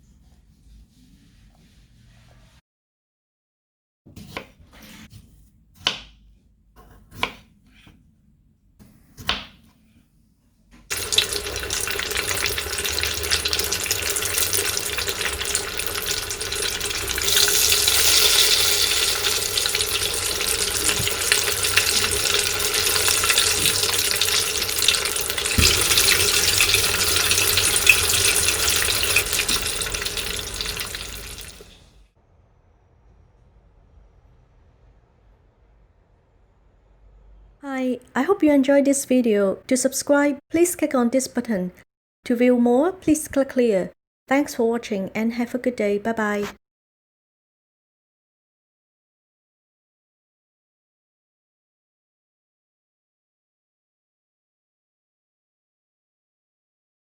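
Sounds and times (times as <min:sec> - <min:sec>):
chicken wings deep frying: 0:10.9 - 0:32.0.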